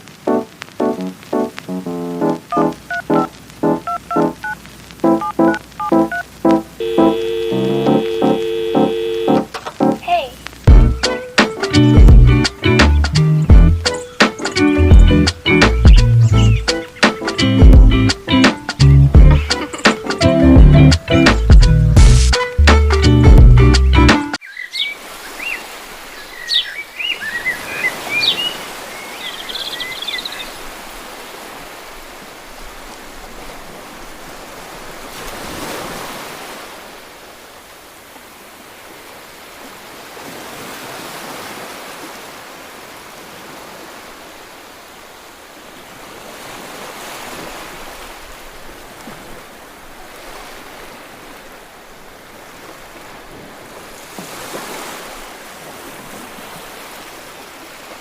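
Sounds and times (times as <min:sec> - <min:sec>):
ocean waves washing in: 0:00.0 - 0:13.2, 0:13.8 - 0:20.4, 0:24.1 - 0:58.0
bird chirping: 0:15.8 - 0:17.1, 0:24.4 - 0:30.6.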